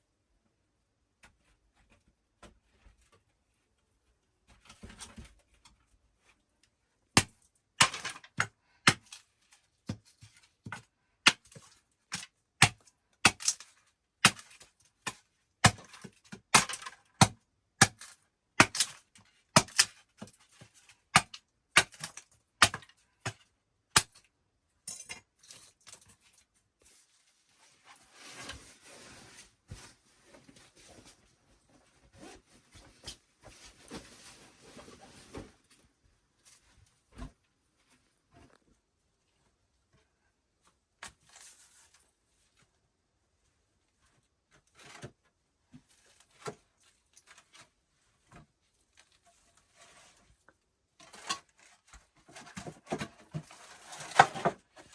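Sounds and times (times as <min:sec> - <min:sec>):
soft scraping and rustling: 0:25.7 - 0:39.5, 0:45.8 - 0:54.9.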